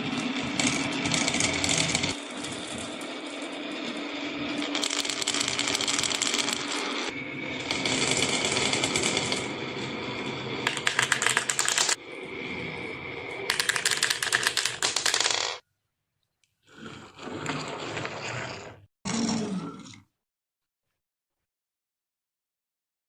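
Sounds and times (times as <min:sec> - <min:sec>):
marbles rolling down marble run: 0:00.0 - 0:12.0, 0:13.4 - 0:15.6.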